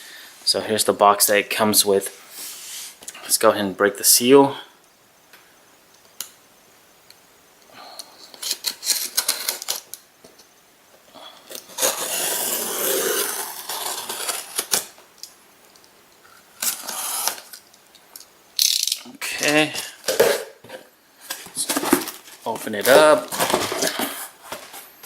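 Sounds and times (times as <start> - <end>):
cardboard tearing and rubbing: 11.6 - 15.0.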